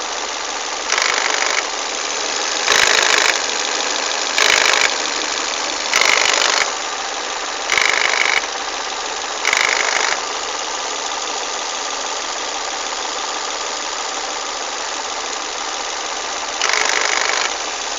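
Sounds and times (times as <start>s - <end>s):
harsh engine bursts: 0.0s - 12.2s, 15.9s - 17.9s
car engine running: 0.0s - 17.9s.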